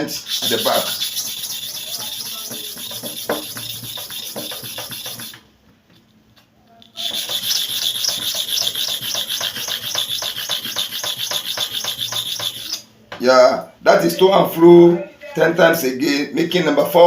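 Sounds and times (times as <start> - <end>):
blade scraping on sharpening surface: 0.0 - 5.4, 7.0 - 12.8.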